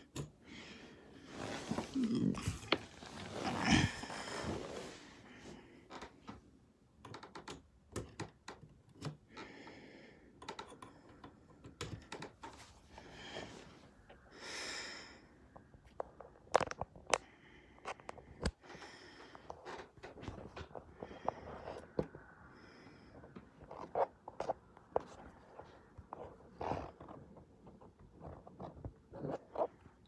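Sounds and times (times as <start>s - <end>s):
handling noise of objects moved: 1.2s - 5.7s.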